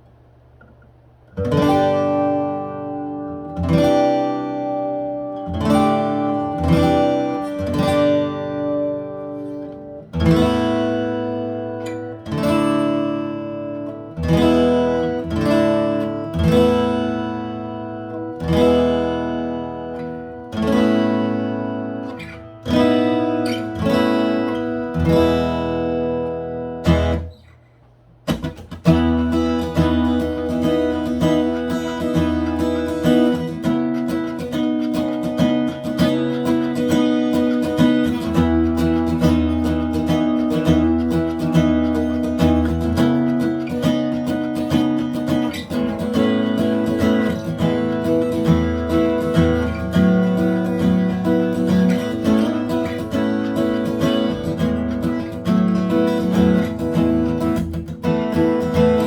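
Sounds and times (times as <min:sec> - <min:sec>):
acoustic guitar strumming chords: 0:00.0 - 0:59.0.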